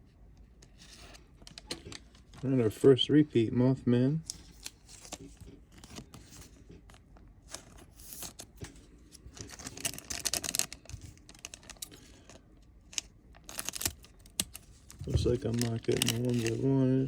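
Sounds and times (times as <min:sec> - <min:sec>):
foil pack crinkling: 0:07.5 - 0:17.0.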